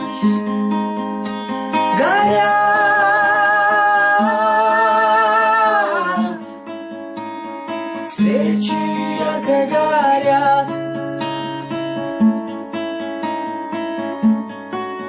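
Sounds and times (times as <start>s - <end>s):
acoustic guitar: 0.0s - 15.0s
person singing with vibrato: 1.8s - 6.6s, 8.1s - 10.8s.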